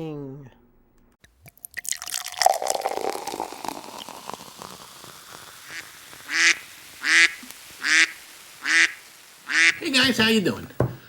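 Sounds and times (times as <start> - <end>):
crackling noise with falling tone: 3.4 - 10.6
loud nasal quack-like calls: 5.7 - 9.8.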